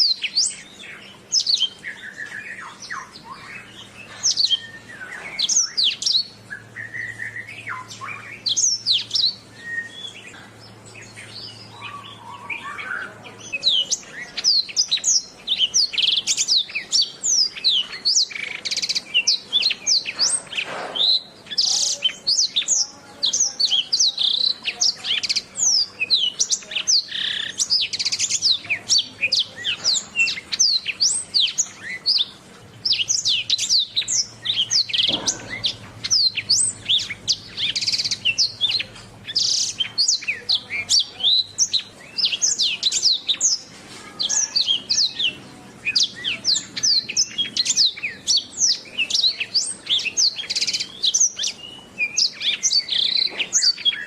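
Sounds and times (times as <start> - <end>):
canary singing trills: 0.0 - 54.0.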